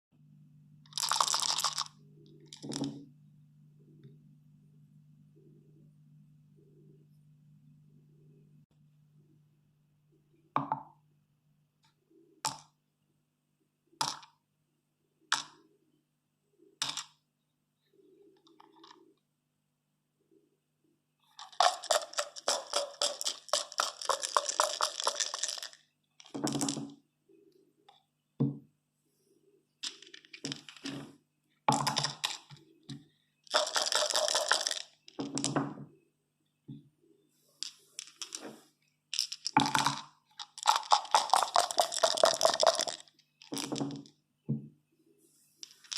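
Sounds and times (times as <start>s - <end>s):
dice clattering on hard surface: 0.9s - 3.0s, 14.0s - 14.3s, 16.8s - 17.2s, 21.3s - 27.0s, 29.8s - 31.1s, 31.7s - 32.6s, 33.4s - 35.8s, 37.6s - 44.2s, 45.6s - 45.9s.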